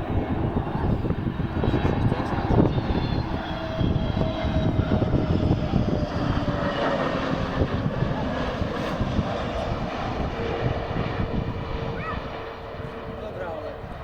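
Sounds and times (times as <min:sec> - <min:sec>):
jet airliner rumble: 0:00.0 - 0:14.0.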